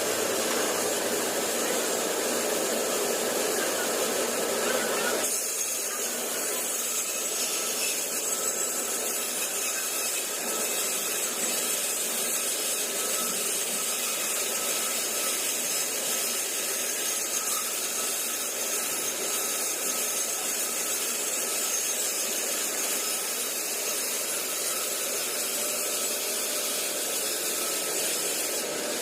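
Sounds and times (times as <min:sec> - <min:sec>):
band saw droning: 0:13.0 - 0:29.0.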